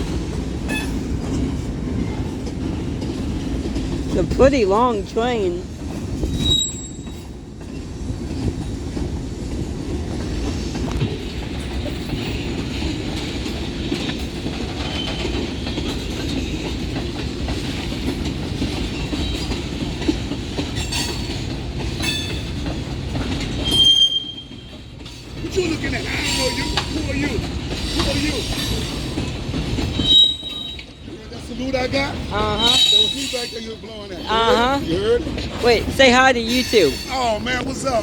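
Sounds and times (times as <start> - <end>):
train wheels rumbling on rails: 0.0 - 38.0
wheels clacking over rail joints: 0.0 - 38.0
faint high wheel squeal: 6.3 - 7.3, 23.6 - 24.7, 29.9 - 31.0, 32.6 - 34.6.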